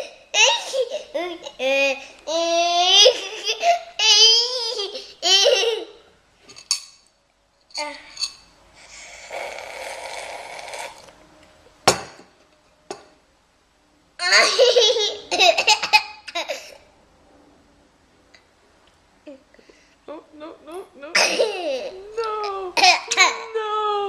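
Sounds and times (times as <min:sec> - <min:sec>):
young child laughing: 0:14.2 - 0:16.8.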